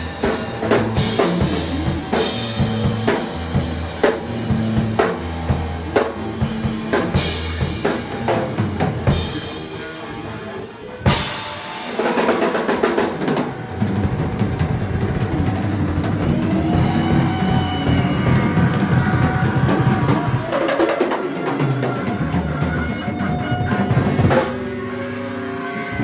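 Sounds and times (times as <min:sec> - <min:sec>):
drum kit beat: 0:00.0 - 0:10.4, 0:11.0 - 0:24.7
bass notes: 0:00.0 - 0:10.5.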